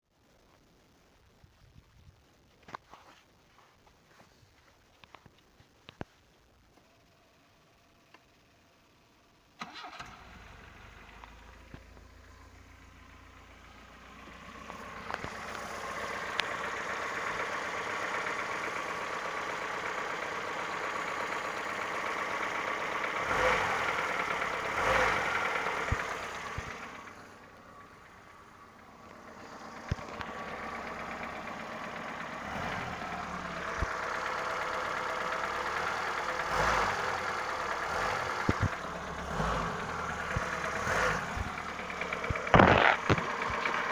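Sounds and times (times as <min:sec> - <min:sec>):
engine running with knock: 0:22.6 - 0:27.2, 0:29.1 - 0:43.9.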